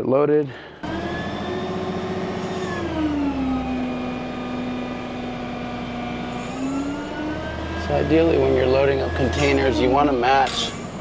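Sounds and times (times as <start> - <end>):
diesel engine running: 0.7 - 11.0.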